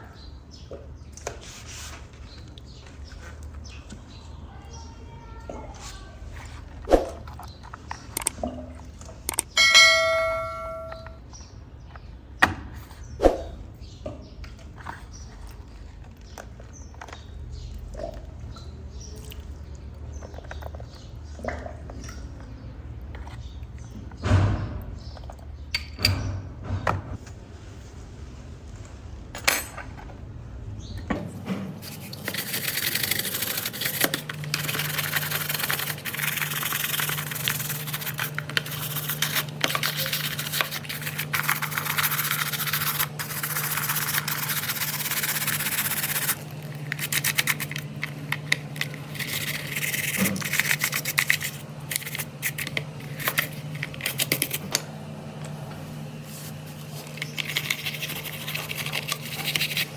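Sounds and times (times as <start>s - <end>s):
low hum: 9.6s - 11.2s
scrubbing on model car body: 31.8s - 54.6s, 56.3s - 59.9s.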